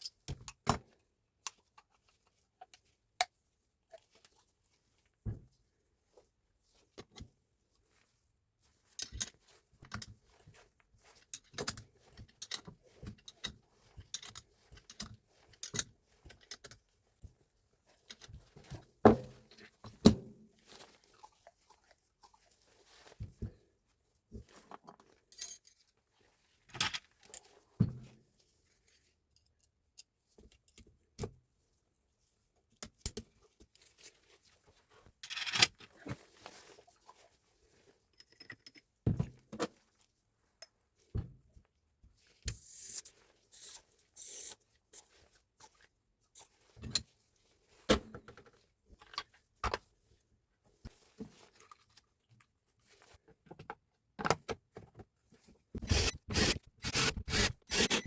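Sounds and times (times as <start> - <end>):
metal parts and tools clinking: 55.8 - 58.0.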